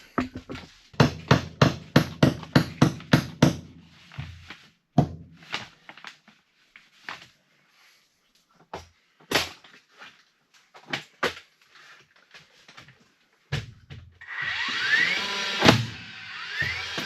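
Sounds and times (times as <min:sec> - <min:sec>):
wooden knocks and clatters: 0:00.0 - 0:00.8.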